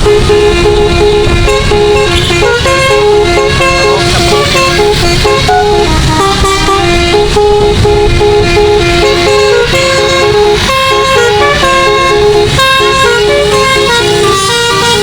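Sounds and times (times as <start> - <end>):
low rumble: 0.0 - 10.5
musical air horn tune: 0.0 - 15.0.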